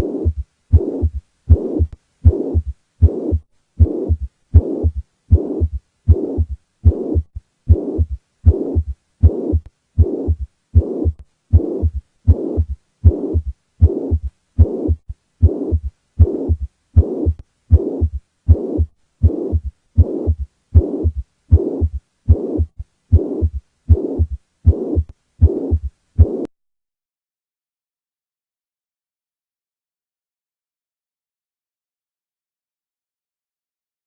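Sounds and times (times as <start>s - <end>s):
heartbeat thuds: 0.0s - 26.5s
whooshing heart murmur: 0.0s - 26.5s.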